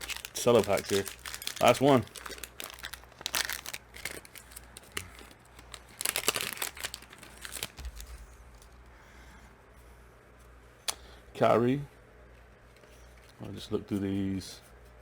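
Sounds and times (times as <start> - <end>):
plastic wrapper crinkling and tearing: 0.0 - 8.9.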